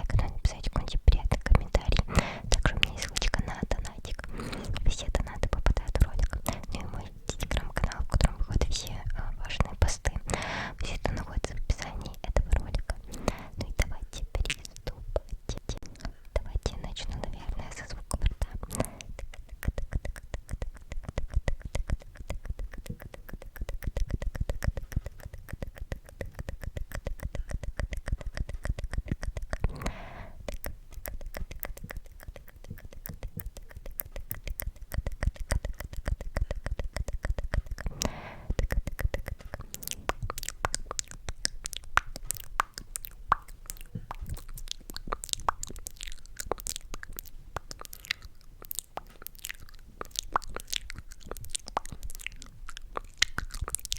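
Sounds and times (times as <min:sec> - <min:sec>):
wet mouth clicks and pops: 0:00.0 - 0:53.9
soft breath: 0:02.0 - 0:03.1, 0:04.1 - 0:05.1, 0:10.2 - 0:11.0, 0:12.8 - 0:14.1, 0:17.0 - 0:19.3, 0:29.6 - 0:30.7, 0:37.8 - 0:40.4.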